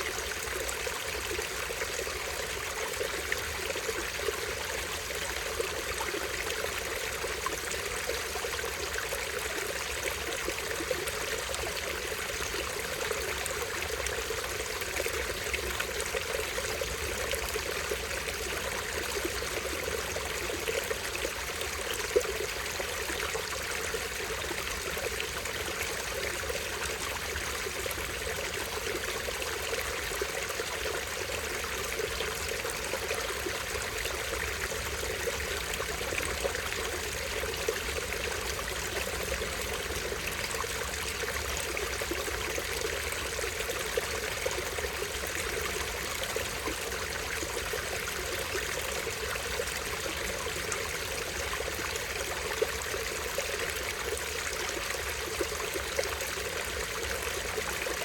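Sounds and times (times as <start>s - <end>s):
stream trickling over small waterfall: 0.0s - 58.0s.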